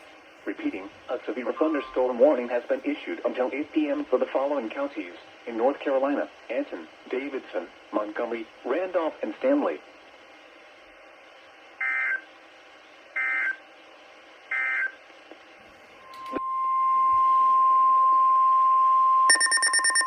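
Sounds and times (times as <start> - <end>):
steady radio warning tone: 0.0 - 9.8
rapid pulsing alarm beep: 11.8 - 12.2, 13.2 - 13.6, 14.5 - 15.0, 16.0 - 20.0
warbling data tone bursts: 16.0 - 20.0
click: 16.1 - 16.4.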